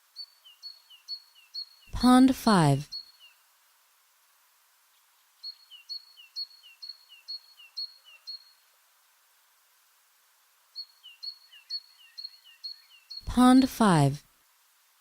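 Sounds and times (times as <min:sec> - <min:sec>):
songbird singing: 0:00.0 - 0:03.5, 0:04.9 - 0:08.8, 0:10.7 - 0:14.1.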